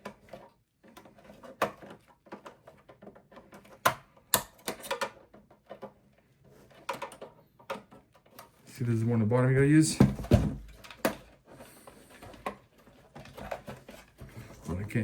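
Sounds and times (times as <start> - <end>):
wires clicking into plastic clips: 0.0 - 5.9.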